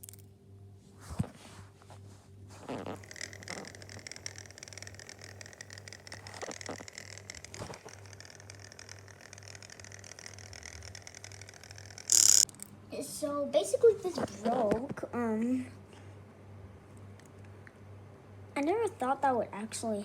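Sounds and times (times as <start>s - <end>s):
electric motor pulsing hum: 2.4s - 12.7s.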